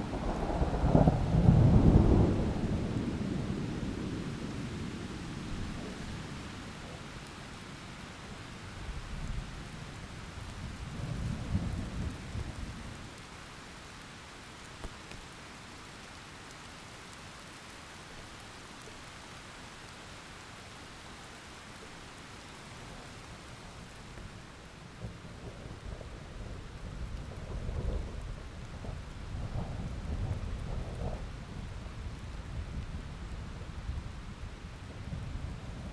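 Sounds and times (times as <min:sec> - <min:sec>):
rolling thunder: 0:00.0 - 0:04.9, 0:25.0 - 0:33.0
rain hissing: 0:00.0 - 0:35.9.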